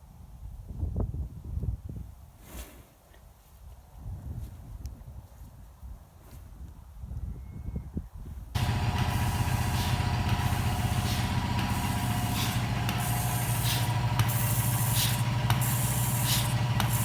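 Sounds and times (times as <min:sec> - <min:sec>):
motor humming: 0:08.6 - 0:17.0
short bursts of hiss: 0:08.6 - 0:17.0.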